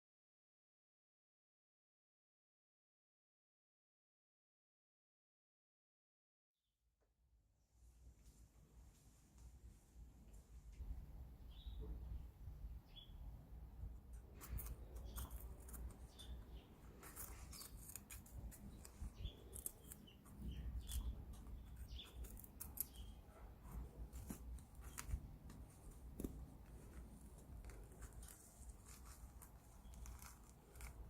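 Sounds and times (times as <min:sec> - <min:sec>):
crisp clicks and scrapes: 0:14.0 - 0:31.0
small high chirps: 0:14.4 - 0:23.3.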